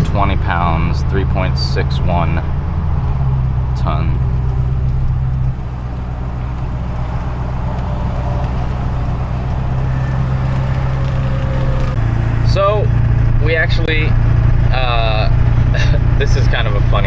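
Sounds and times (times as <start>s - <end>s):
truck engine and road noise: 0.0s - 17.0s.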